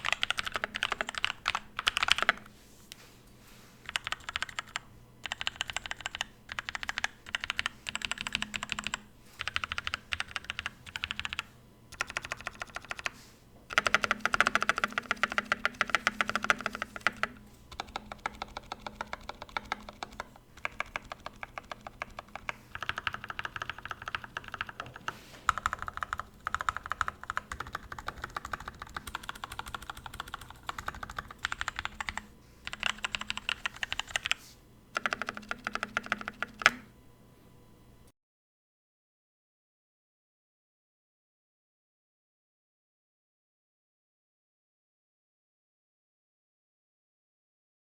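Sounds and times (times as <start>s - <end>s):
mechanical keyboard typing: 0.0s - 2.5s, 3.8s - 34.4s, 35.0s - 36.9s.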